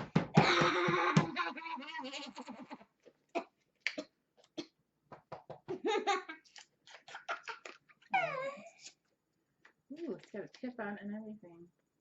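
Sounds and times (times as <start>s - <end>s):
person laughing and giggling: 0.4s - 3.0s, 5.7s - 8.6s.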